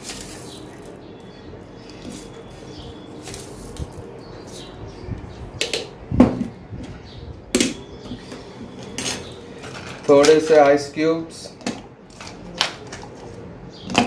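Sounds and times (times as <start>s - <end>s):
utensils clinking against shaker: 0.0s - 1.0s, 1.9s - 4.8s.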